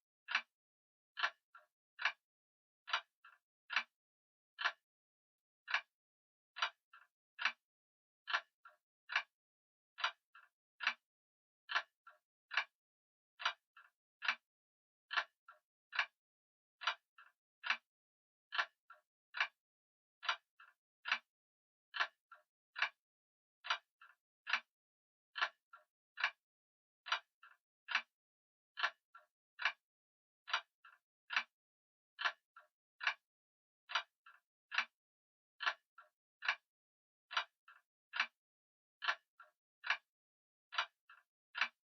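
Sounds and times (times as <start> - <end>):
clock ticking: 8.3 - 9.3, 15.1 - 16.2, 18.5 - 19.6, 20.2 - 21.3, 23.6 - 24.7, 27.1 - 28.1, 28.8 - 29.8, 30.5 - 31.5, 32.2 - 33.2, 35.6 - 36.6, 37.3 - 38.4, 39.0 - 40.1, 40.7 - 41.8.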